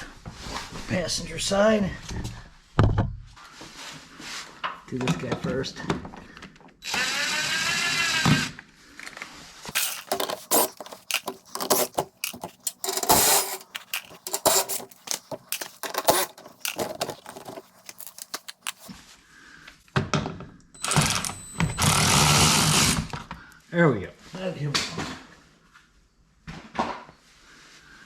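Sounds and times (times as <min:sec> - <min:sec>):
cordless power driver spinning: 0:06.9 - 0:08.5, 0:09.7 - 0:18.9, 0:20.8 - 0:23.2
tools and fasteners rattling: 0:09.7 - 0:18.9.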